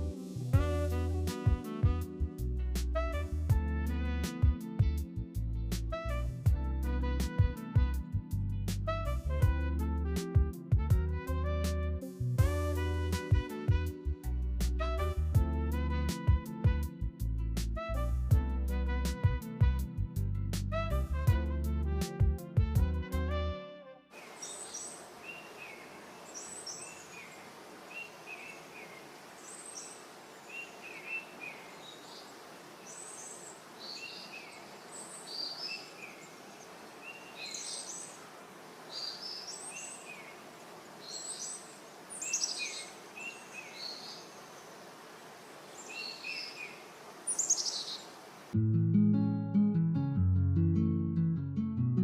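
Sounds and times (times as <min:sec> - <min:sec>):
outdoor background hiss: 0:00.0 - 0:06.5, 0:12.0 - 0:15.3, 0:24.1 - 0:48.6
birds chirping: 0:24.2 - 0:48.5.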